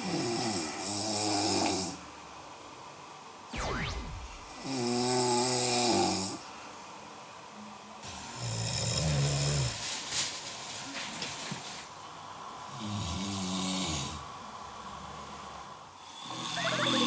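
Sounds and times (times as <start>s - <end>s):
men snoring: 0.0s - 2.0s, 4.7s - 6.4s, 8.1s - 9.7s, 12.7s - 14.2s, 15.0s - 17.0s
whistle-like falling tone: 3.6s - 4.6s.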